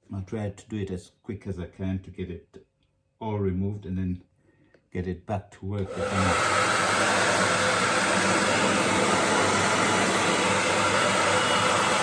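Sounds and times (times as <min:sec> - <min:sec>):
hair dryer running: 0:05.8 - 0:12.0.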